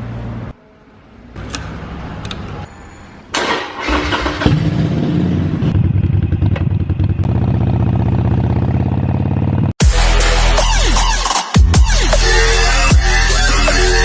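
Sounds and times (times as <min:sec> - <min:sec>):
clicks: 0:01.4 - 0:02.7
motorcycle engine idling: 0:04.2 - 0:09.7.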